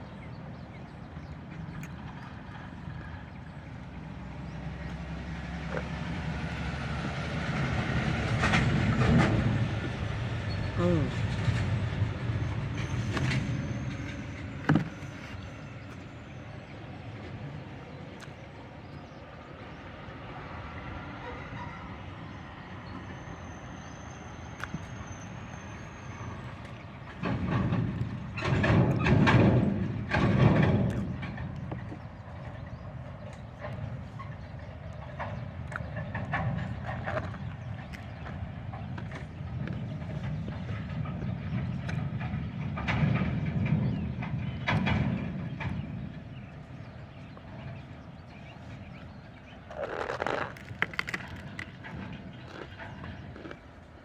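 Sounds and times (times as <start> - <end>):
heavy vehicle rumble: 0.0 - 54.0
traffic hum: 0.0 - 54.0
vehicle passing by: 3.9 - 14.0.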